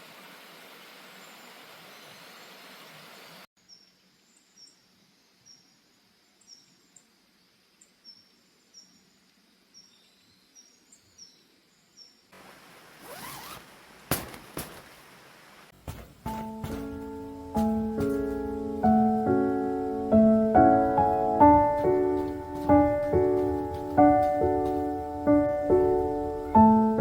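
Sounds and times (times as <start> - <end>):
steady outdoor hiss: 0.0 - 27.0
zipper being pulled: 12.8 - 14.9.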